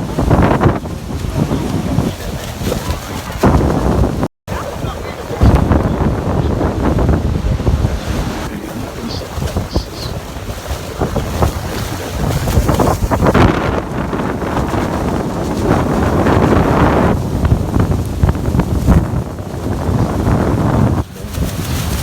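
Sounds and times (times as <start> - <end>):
wind buffeting microphone: 0.0 - 22.0
waterfall roaring: 4.5 - 10.4.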